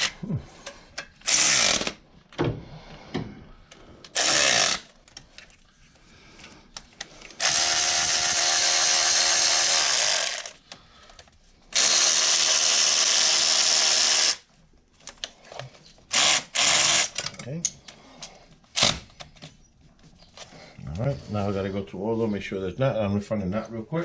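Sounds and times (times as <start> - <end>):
cordless power driver running: 1.2 - 2.0, 4.1 - 5.0, 7.4 - 10.6, 11.7 - 14.4.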